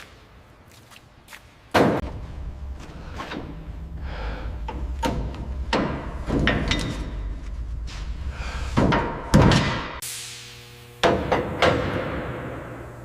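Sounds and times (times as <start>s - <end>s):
steady low rumble: 2.0s - 9.3s
metal clanks and knocks: 4.6s - 7.4s.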